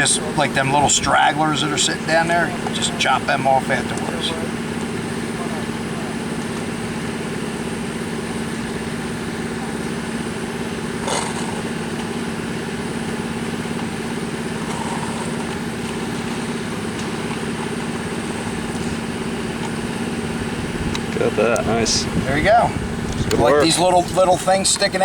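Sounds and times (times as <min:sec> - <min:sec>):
machine drone: 0:00.0 - 0:24.5.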